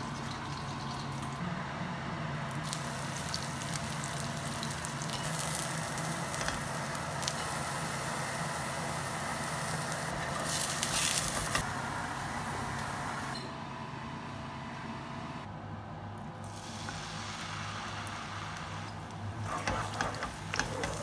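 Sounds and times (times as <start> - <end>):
food sizzling in hot oil: 2.6 - 11.6, 16.4 - 21.0.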